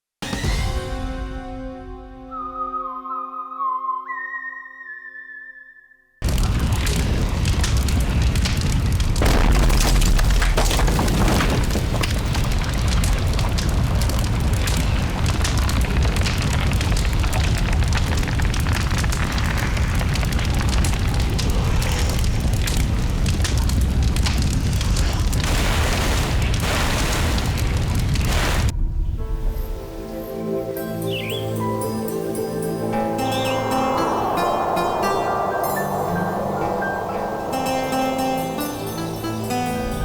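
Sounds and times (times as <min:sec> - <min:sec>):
rumble with dense crackling: 0:06.2 - 0:29.8.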